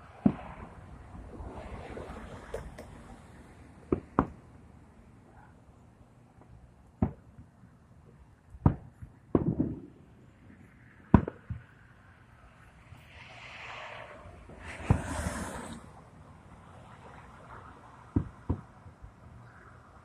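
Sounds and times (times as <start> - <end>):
fireworks bangs: 0.0 - 0.8, 3.8 - 4.4, 8.6 - 10.0, 11.1 - 11.6, 14.1 - 15.9.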